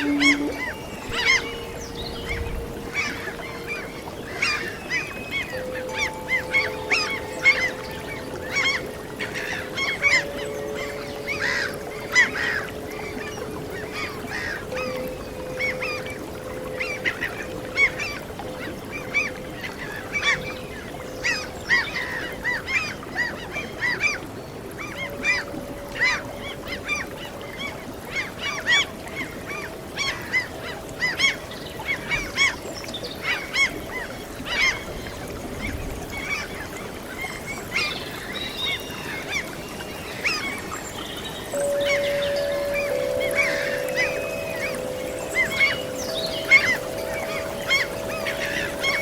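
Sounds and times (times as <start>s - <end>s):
soft steady held note: 0.0s - 22.6s, 41.3s - 49.0s
gulls calling: 0.0s - 49.0s.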